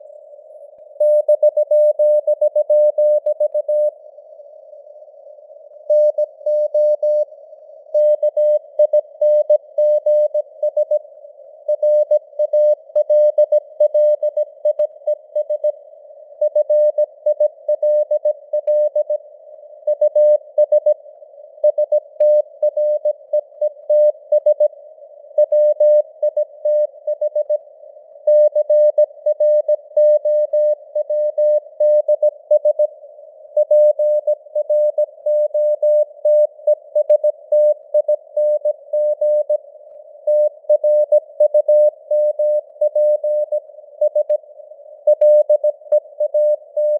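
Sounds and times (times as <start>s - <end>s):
faint radio hiss: 3.8s - 8.0s, 10.4s - 12.9s, 14.4s - 16.4s, 19.1s - 25.4s, 26.0s - 28.3s, 31.6s - 35.2s, 36.0s - 46.9s.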